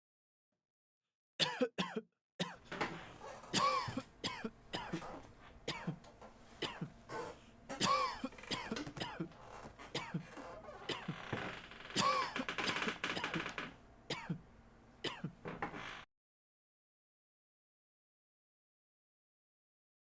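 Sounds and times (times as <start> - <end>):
people coughing: 1.4 - 2.6, 3.5 - 6.0, 6.6 - 9.3, 9.9 - 11.4, 12.0 - 14.4, 15.1 - 15.4.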